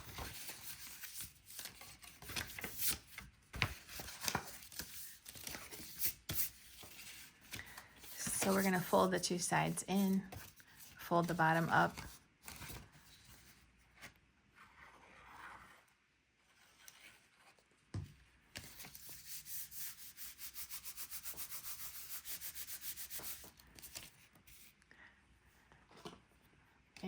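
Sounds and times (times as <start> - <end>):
cardstock paper being folded: 0.0 - 15.8, 18.6 - 24.8
rubbing along paper crease: 3.9 - 12.2, 18.6 - 24.8.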